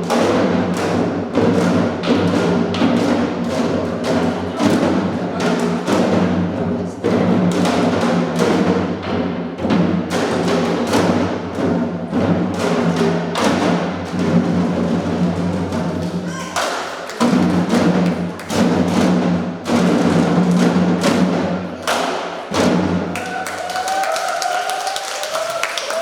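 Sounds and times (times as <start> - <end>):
drum ensemble booming strikes: 0.0 - 23.4
audience clapping: 16.6 - 17.3, 23.1 - 26.0.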